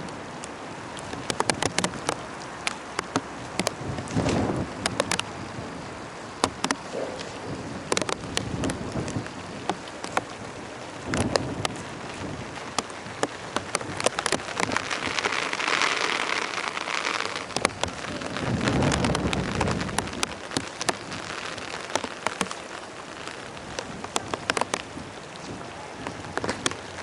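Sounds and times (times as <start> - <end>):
heavy rain falling: 0.0 - 27.0
raindrops clicking on surface: 0.0 - 27.0
rumble of thunder: 3.7 - 5.8, 17.5 - 21.3.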